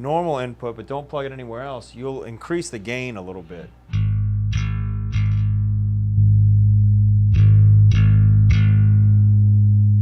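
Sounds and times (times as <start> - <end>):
electric bass note plucked: 3.9 - 10.0.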